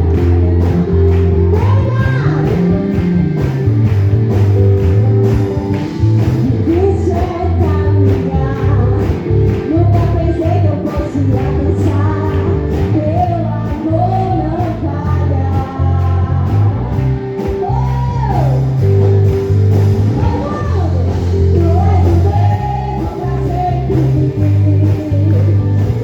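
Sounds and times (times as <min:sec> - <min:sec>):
band playing worship song: 0:00.0 - 0:26.0
bass line: 0:00.0 - 0:26.0
person singing: 0:06.4 - 0:19.0, 0:20.1 - 0:26.0.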